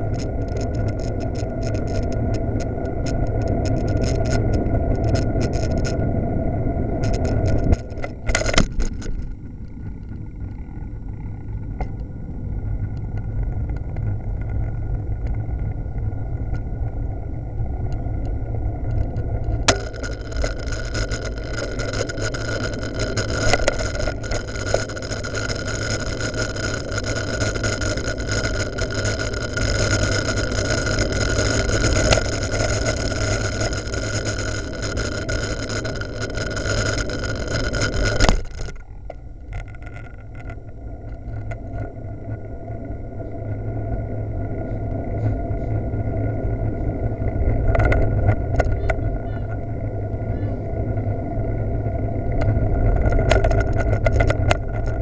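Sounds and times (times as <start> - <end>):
rattling clicks: 0.0 - 6.1, 7.0 - 10.6, 17.9 - 42.5, 52.3 - 55.0
wind and road rumble: 0.0 - 55.0.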